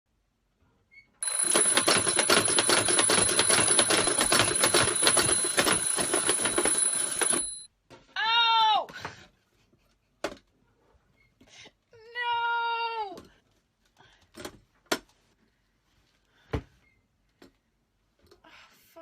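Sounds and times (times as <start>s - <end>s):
alarm clock ringing: 1.2s - 7.7s.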